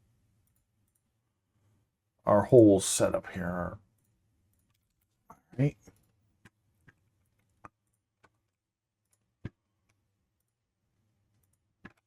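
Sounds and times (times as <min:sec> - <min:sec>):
computer mouse clicks: 0:05.9 - 0:10.6, 0:11.3 - 0:12.0.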